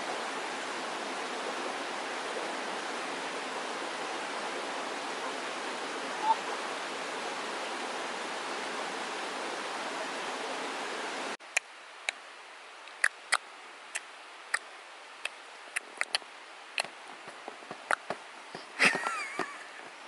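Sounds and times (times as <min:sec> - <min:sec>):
waterfall rushing: 0:00.0 - 0:11.4.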